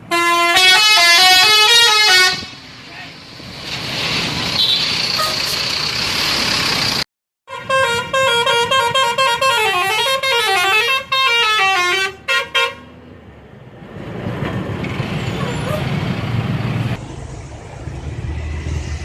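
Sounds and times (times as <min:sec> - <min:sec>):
multi-tone musical bus horn: 0:00.0 - 0:02.6, 0:07.5 - 0:13.0.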